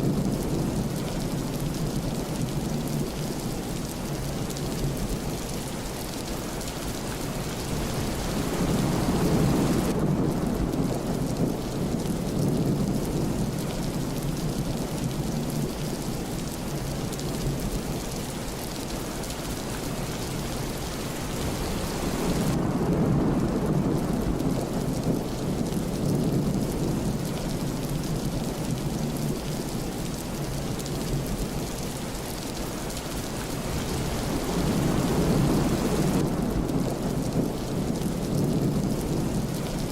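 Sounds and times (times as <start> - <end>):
steady rain falling: 0.0 - 39.9
rolling thunder: 7.7 - 15.6, 21.4 - 29.4, 33.7 - 39.9.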